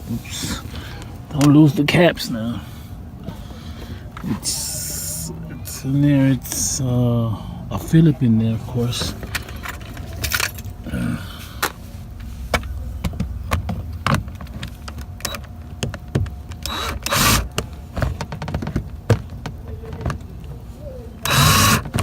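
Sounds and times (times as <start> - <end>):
screwdriver clicking and scraping: 21.3 - 22.0.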